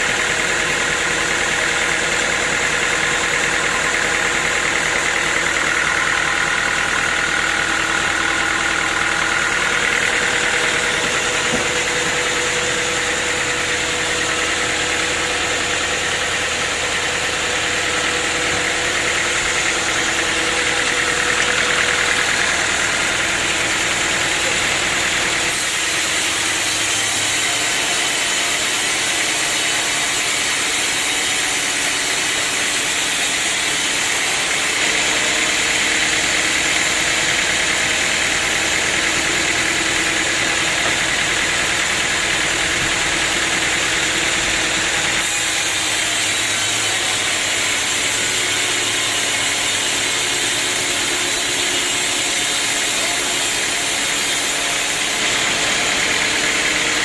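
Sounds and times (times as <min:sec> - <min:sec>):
sawmill machinery running: 0:00.0 - 0:57.0.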